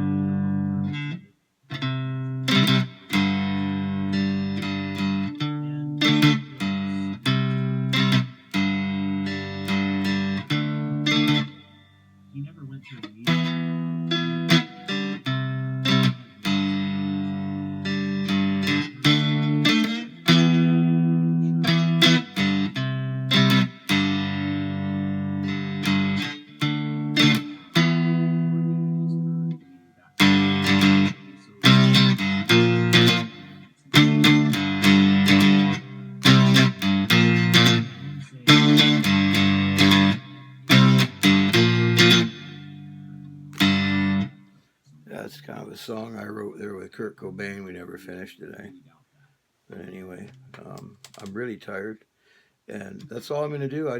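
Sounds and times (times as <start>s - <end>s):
electric guitar chords: 0.0s - 44.6s.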